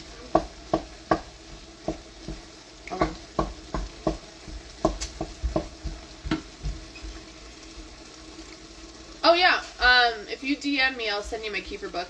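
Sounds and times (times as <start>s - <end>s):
utensil stirring and knocking pan: 0.0s - 7.9s
food sizzling in a pan: 0.0s - 12.0s.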